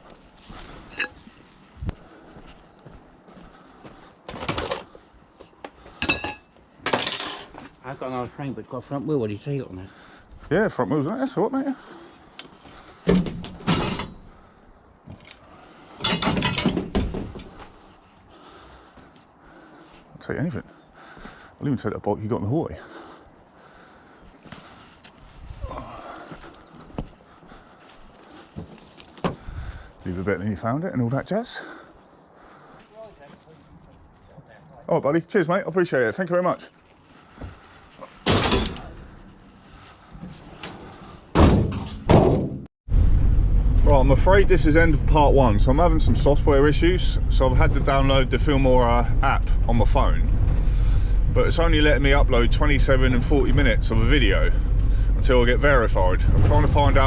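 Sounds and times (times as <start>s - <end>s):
scrap metal clanking and rattling: 6.0s - 7.7s, 13.1s - 14.3s, 15.9s - 17.7s, 38.2s - 39.2s.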